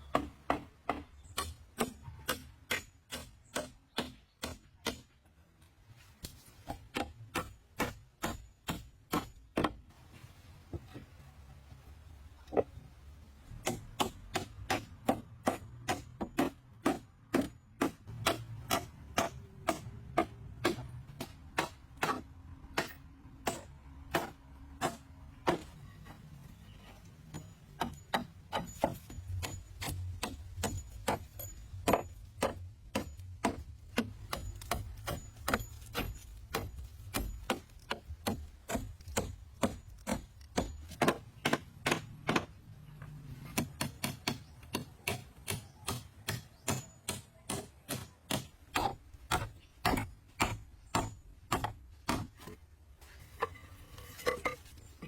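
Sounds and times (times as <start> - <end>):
tool striking wood: 6.6 - 9.8, 13.6 - 26.2, 27.3 - 42.6, 43.5 - 52.6.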